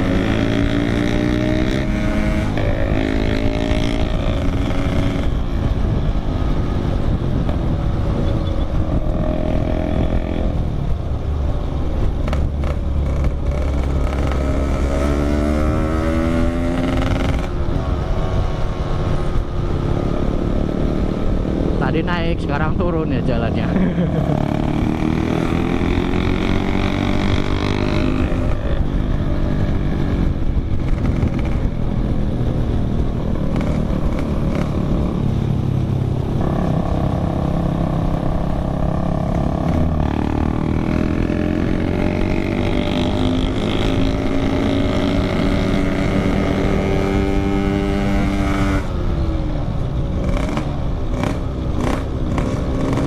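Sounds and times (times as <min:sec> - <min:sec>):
two-stroke motorcycle engine revving: 0:00.0 - 0:05.8, 0:06.6 - 0:10.7, 0:12.0 - 0:17.7, 0:23.1 - 0:32.6, 0:33.4 - 0:35.4, 0:36.2 - 0:49.0, 0:50.1 - 0:53.0.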